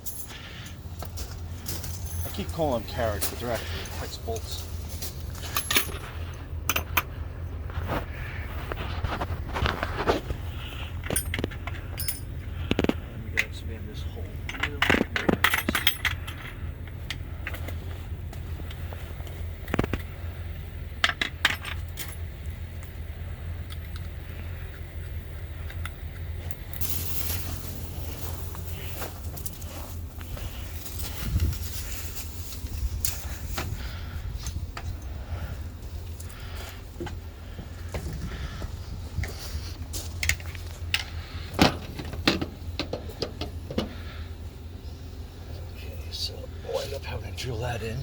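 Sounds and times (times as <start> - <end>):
steady low hum: 0.0 - 48.0
metal bolts clinking: 5.4 - 7.2, 11.0 - 12.4, 14.3 - 17.6, 21.0 - 22.3.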